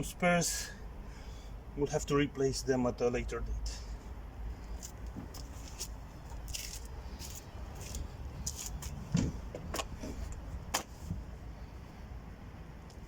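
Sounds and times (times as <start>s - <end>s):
dull thump: 9.1s - 11.3s.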